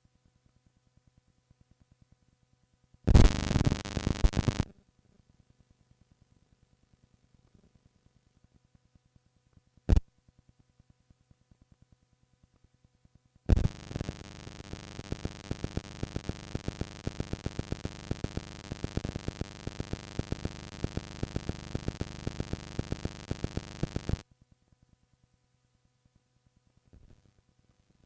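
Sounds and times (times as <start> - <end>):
tape hiss: 0.0 - 4.8, 11.6 - 24.3
rapid sharp tape clicks: 3.1 - 4.7, 13.5 - 24.2.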